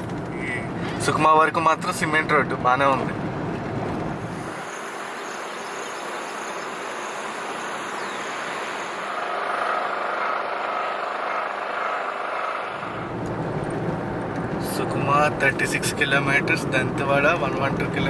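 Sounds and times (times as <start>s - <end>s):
car tyre road noise: 0.0s - 18.0s.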